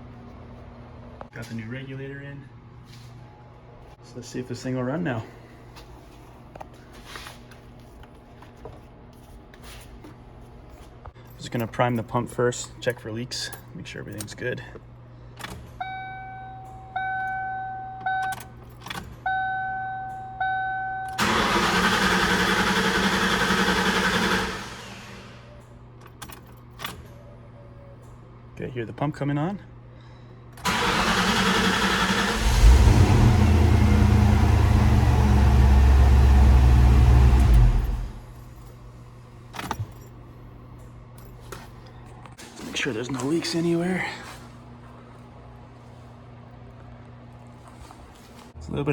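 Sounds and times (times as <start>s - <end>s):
car dashboard warning chime: 15.8s - 18.4s, 19.3s - 21.2s
car starter cranking engine: 21.2s - 25.5s, 30.6s - 38.4s.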